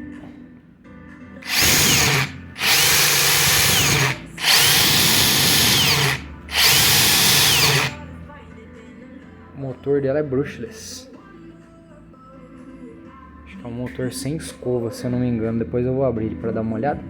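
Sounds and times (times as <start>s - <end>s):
impact wrench spinning: 1.4s - 8.0s.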